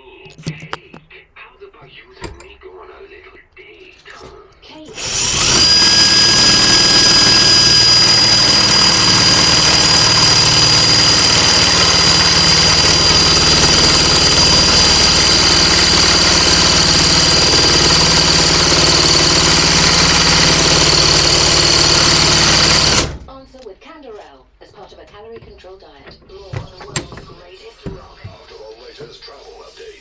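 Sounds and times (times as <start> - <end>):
lathe motor whining: 4.9 - 23.3.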